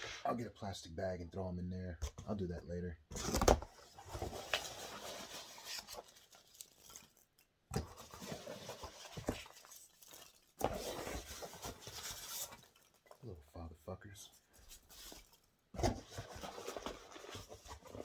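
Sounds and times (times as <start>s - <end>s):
hands rummaging through packing peanuts: 3.8s - 7.2s, 7.9s - 13.0s.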